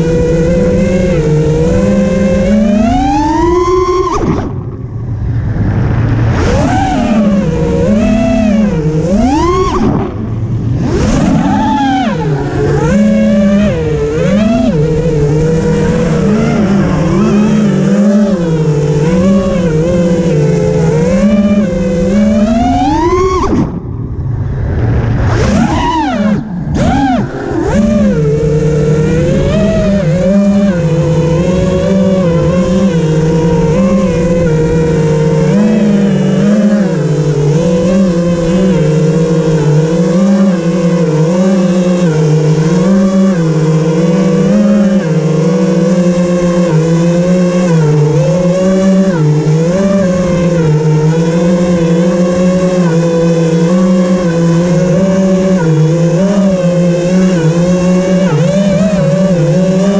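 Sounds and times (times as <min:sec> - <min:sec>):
wind rumbling on microphone: 0:00.0 - 0:36.1
motor running: 0:00.0 - 0:59.9
vehicle engine revving: 0:00.0 - 0:59.9.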